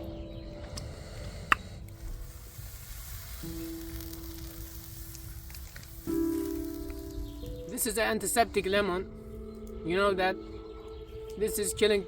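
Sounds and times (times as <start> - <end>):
soft background music: 0.0 - 12.0
campfire sizzling and crackling: 0.7 - 10.1.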